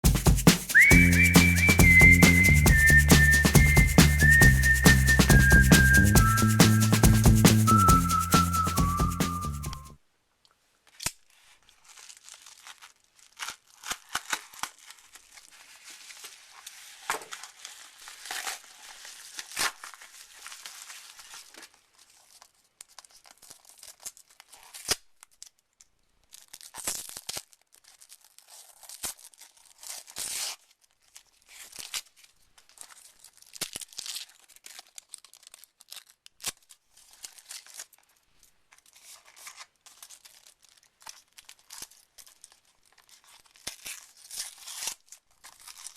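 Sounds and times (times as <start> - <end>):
packaging crinkling and tearing: 11.9 - 24.8, 26.3 - 32.0, 32.6 - 38.1.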